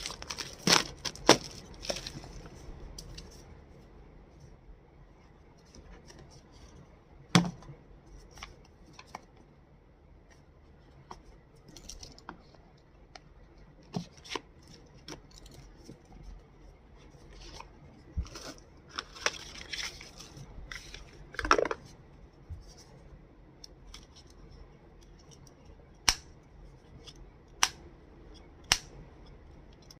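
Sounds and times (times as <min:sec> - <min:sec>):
packaging rustling: 0:00.0 - 0:03.4, 0:17.3 - 0:21.8.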